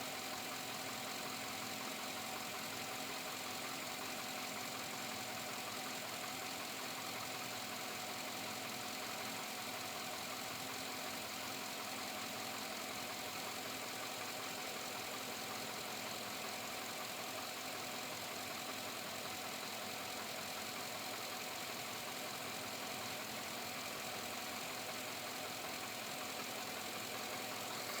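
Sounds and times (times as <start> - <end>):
engine knocking: 0.0 - 28.0
engine running: 24.8 - 28.0.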